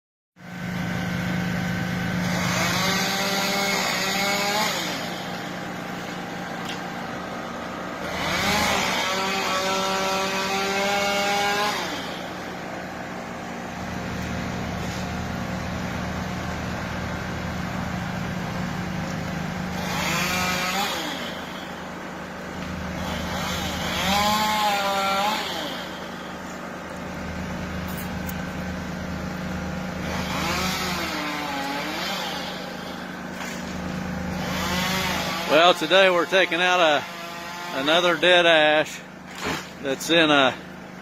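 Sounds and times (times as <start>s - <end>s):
chainsaw revving: 0.5s - 40.7s.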